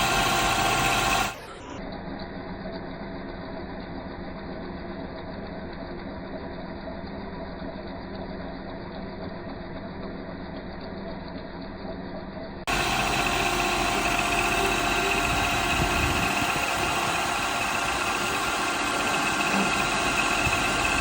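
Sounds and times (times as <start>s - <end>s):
machine tool motor humming: 0.0s - 1.8s, 12.7s - 21.0s.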